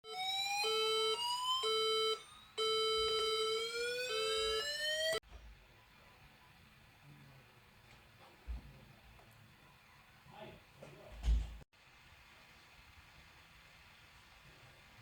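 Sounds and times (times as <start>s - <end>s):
rising electronic alarm tone: 0.0s - 5.2s.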